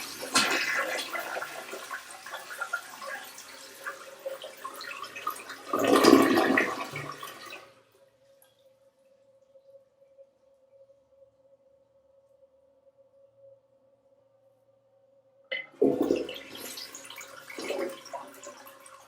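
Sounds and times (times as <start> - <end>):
toilet flushing: 0.0 - 7.9, 15.5 - 19.0
faint steady tone: 7.8 - 15.7.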